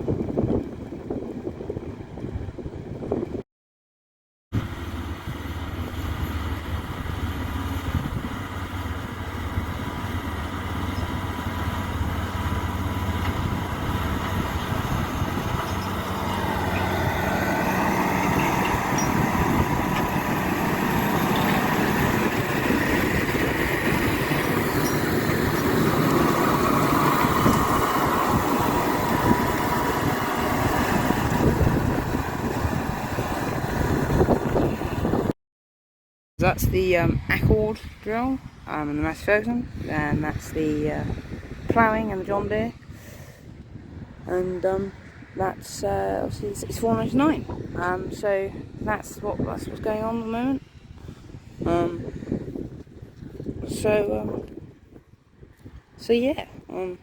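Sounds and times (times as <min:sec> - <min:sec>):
tractor engine drone: 0:04.6 - 0:35.3.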